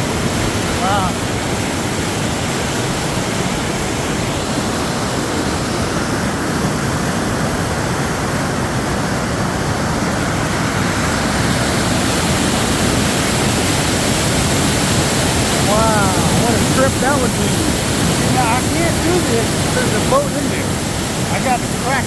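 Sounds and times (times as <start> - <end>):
water roaring through lock gates: 0.0 - 22.0.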